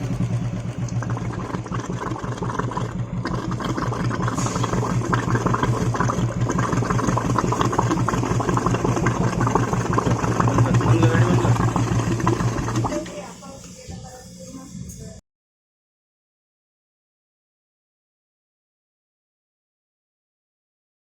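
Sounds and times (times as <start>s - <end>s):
motorcycle engine idling: 0.0s - 3.6s.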